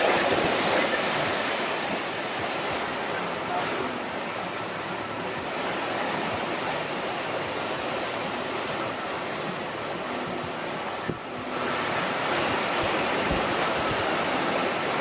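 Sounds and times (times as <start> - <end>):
rushing water: 0.0 - 15.0
wind: 0.0 - 15.0.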